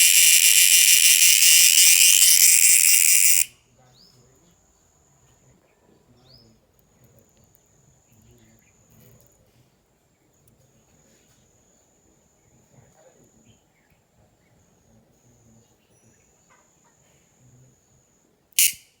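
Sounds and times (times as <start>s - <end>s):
insect high-pitched trill: 0.0s - 3.6s, 18.6s - 19.0s.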